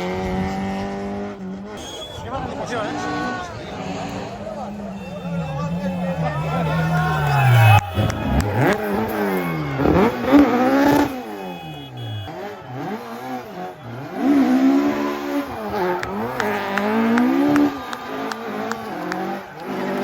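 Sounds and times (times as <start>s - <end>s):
rally car engine revving: 0.0s - 20.0s.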